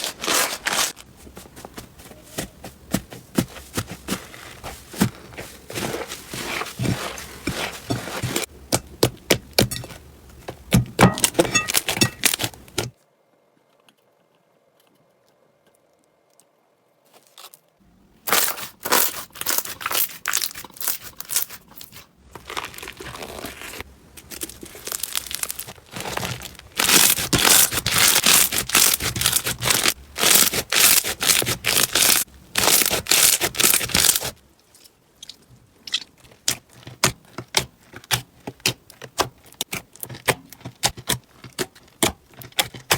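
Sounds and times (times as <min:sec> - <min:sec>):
slime crackling and popping: 0:22.4 - 0:34.4.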